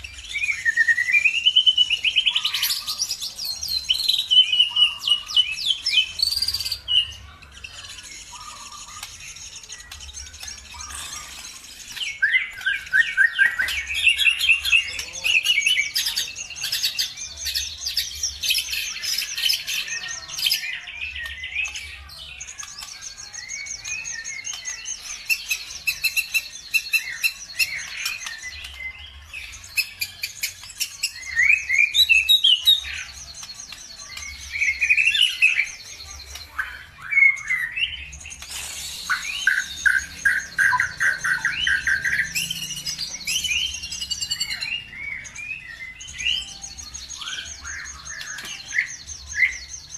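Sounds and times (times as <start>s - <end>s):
lower rattling bird trill: 0.0s - 49.9s
songbirds trilling and chirping: 0.0s - 49.9s.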